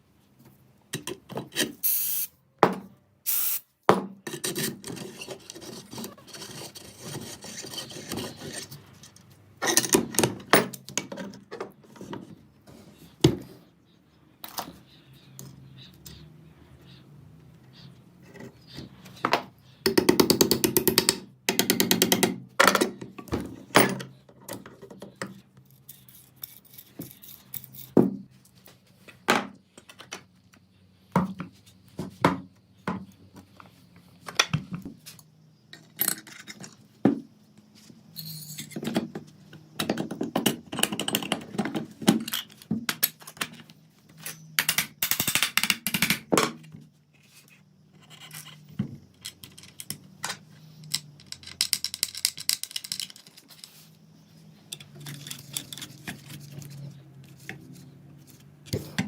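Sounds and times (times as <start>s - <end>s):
clicks and knocks on metal parts: 19.2s - 28.2s, 38.5s - 46.7s, 48.1s - 53.8s.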